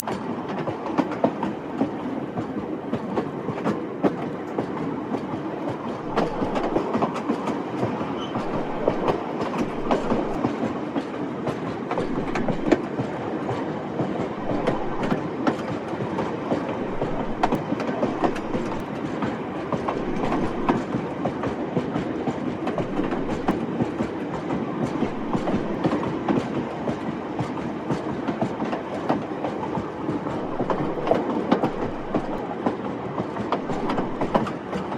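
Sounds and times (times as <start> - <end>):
train rumbling along track: 0.0 - 34.9
train wheels clacking on rails: 0.0 - 34.9.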